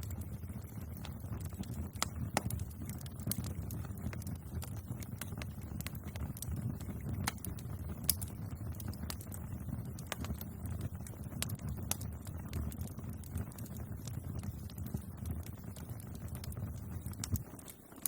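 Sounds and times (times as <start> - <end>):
fire crackling and popping: 0.0 - 18.0
low rumble of flames: 0.0 - 18.0.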